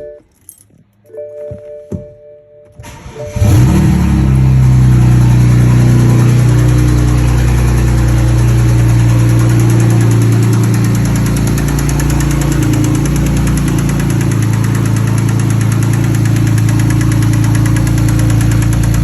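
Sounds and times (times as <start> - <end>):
car engine cranking and idling: 2.8 - 19.0
engine knock: 4.3 - 19.0.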